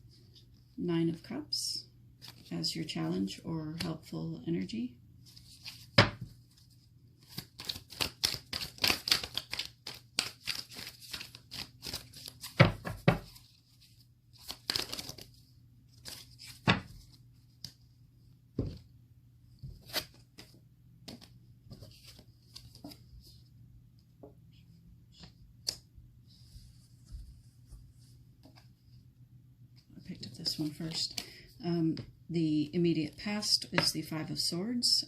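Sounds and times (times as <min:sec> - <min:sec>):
cards being shuffled: 0:05.3 - 0:15.4, 0:16.0 - 0:17.8, 0:19.6 - 0:23.1.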